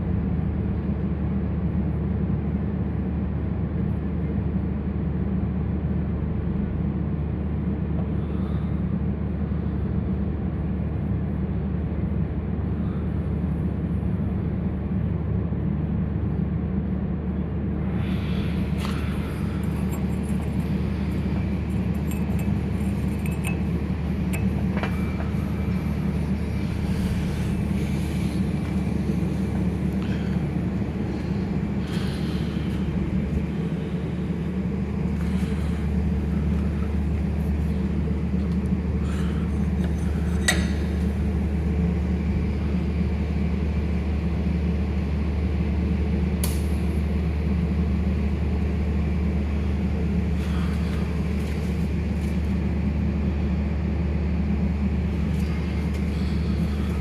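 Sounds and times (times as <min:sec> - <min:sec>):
low machine hum: 0:00.0 - 0:57.0
metallic clinks of metal parts: 0:22.0 - 0:23.7.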